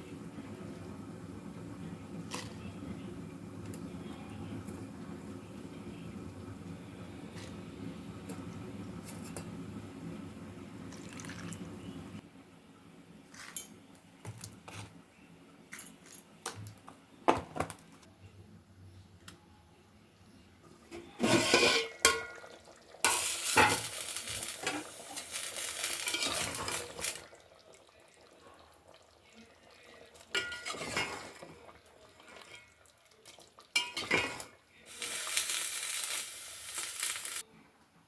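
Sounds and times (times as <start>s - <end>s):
pots and utensils clinking: 13.4s - 13.8s, 20.8s - 27.3s, 30.2s - 37.4s.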